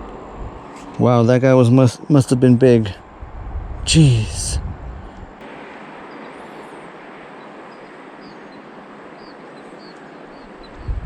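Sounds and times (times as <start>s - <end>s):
river water rushing: 5.4s - 10.7s
faint bird chirps: 6.0s - 6.7s, 7.4s - 11.0s.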